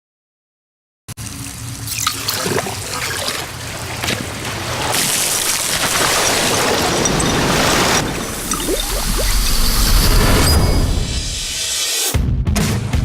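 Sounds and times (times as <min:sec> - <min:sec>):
soda pouring and fizzing: 0:01.2 - 0:10.4.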